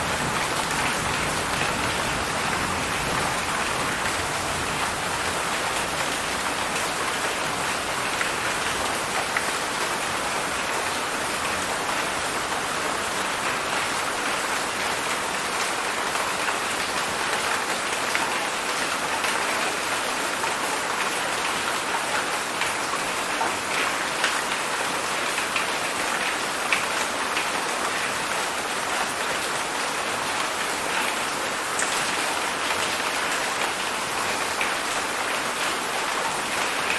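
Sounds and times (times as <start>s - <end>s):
heavy rain hiss: 0.0s - 9.4s.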